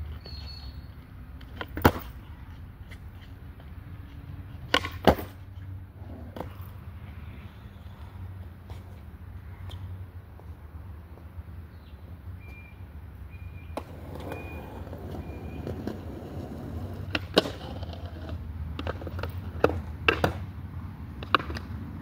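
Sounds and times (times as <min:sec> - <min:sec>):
skateboard wheels rolling: 0:00.0 - 0:09.8, 0:13.7 - 0:20.5, 0:21.1 - 0:22.0
skateboard clacking: 0:01.4 - 0:03.7, 0:04.7 - 0:05.4, 0:13.7 - 0:20.5, 0:21.1 - 0:21.9.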